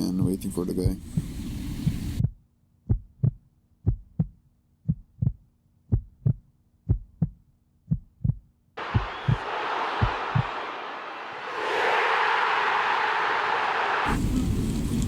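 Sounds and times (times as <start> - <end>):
heartbeat double thump: 0.2 - 8.4.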